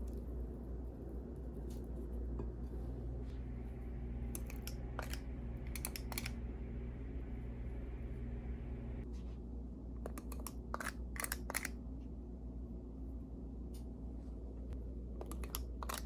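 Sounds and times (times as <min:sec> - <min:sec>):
steady low hum: 0:00.0 - 0:16.0
baking utensils clicking: 0:04.3 - 0:06.4, 0:10.1 - 0:11.8, 0:15.2 - 0:16.0.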